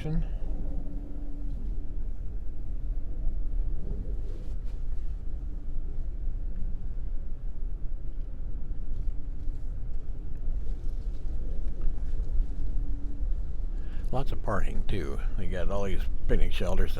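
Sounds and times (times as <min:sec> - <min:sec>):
vehicle engine rumble: 0:00.0 - 0:16.9.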